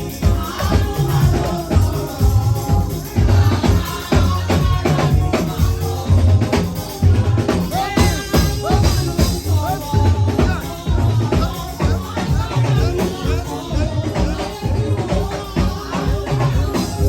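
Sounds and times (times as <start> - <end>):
upbeat music with drums and bass: 0.0 - 17.0.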